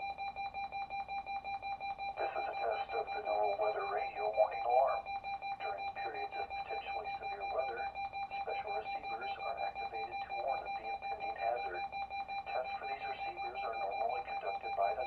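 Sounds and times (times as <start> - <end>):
faint garbled radio voice: 2.2 - 5.0, 5.6 - 11.9, 12.5 - 15.0.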